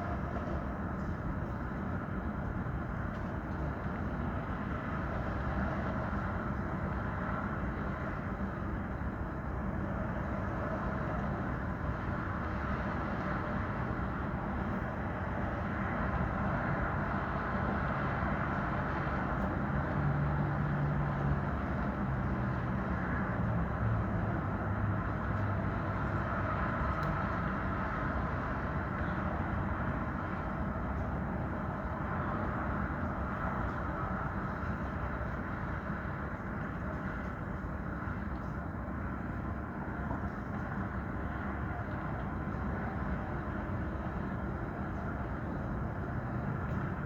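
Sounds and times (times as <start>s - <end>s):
passing vehicles: 0.0s - 47.0s.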